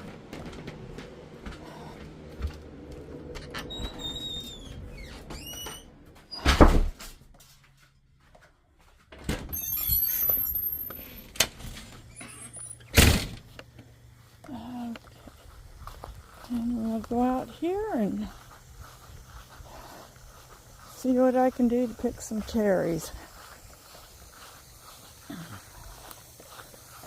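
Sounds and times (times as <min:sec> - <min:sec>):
door hinges squeaking: 0:03.4 - 0:06.8, 0:09.3 - 0:11.2, 0:12.0 - 0:13.3
door banging shut: 0:06.3 - 0:07.0, 0:12.9 - 0:13.4.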